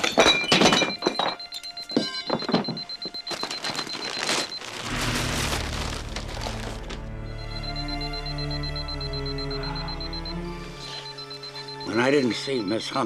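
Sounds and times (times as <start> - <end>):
pager beeping high tone: 0.9 - 6.5, 7.2 - 13.0
wood smashing and splintering: 3.4 - 7.0
low dramatic music: 4.8 - 13.0.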